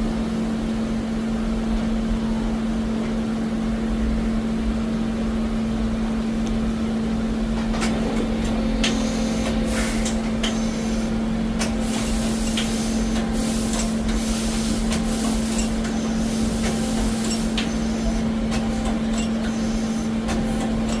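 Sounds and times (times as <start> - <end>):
lathe humming: 7.9 - 21.0.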